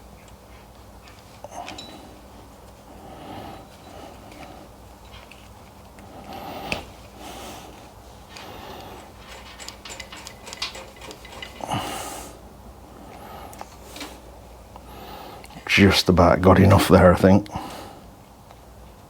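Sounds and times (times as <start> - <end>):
wires clicking and rustling: 7.8 - 12.4.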